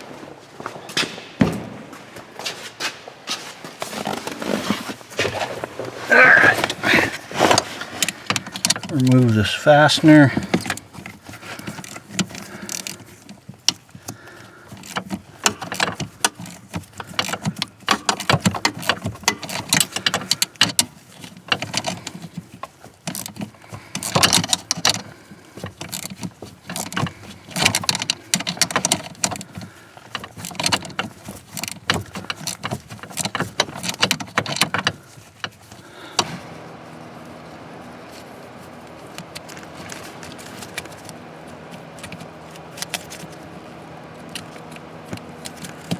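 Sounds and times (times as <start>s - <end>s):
metallic clicks and rattles of tools: 6.6s - 36.4s, 39.0s - 43.5s.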